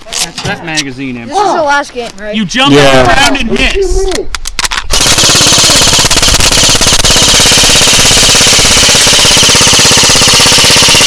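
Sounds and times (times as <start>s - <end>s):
airsoft gun firing full auto: 4.9s - 11.0s.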